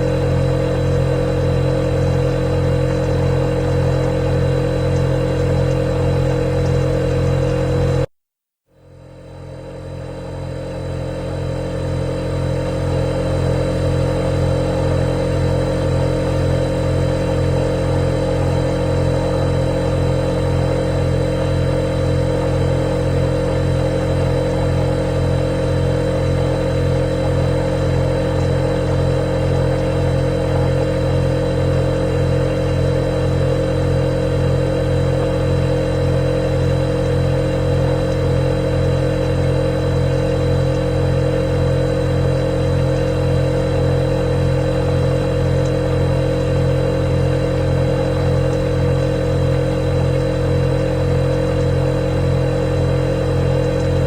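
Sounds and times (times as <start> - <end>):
refrigerator compressor humming: 0.0 - 8.1, 8.7 - 54.0.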